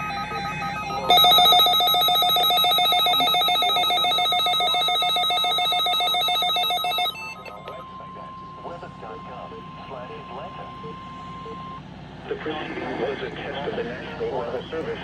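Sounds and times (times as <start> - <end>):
pulsing electronic ringing tone: 0.0 - 11.8.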